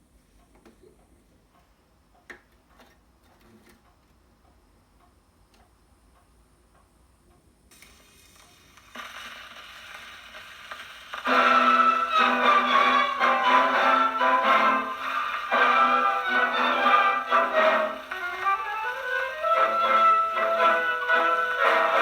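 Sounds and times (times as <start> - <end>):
record surface hiss and crackle: 0.0 - 22.0
gramophone music: 11.2 - 22.0.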